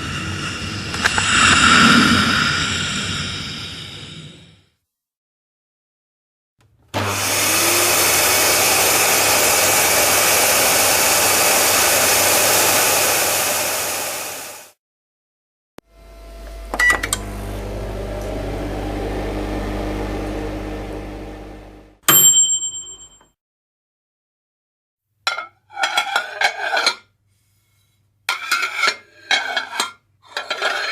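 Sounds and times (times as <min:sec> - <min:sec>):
appliance motor rushing air: 0:00.0 - 0:04.2, 0:07.0 - 0:14.8, 0:15.9 - 0:22.0
quiet appliance humming: 0:15.9 - 0:22.0.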